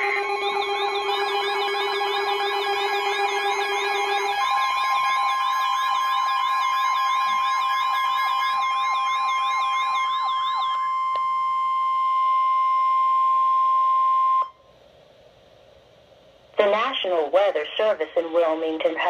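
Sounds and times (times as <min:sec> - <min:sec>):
fast-warbling electronic siren: 0:00.0 - 0:14.5
steady alarm tone: 0:00.0 - 0:14.6.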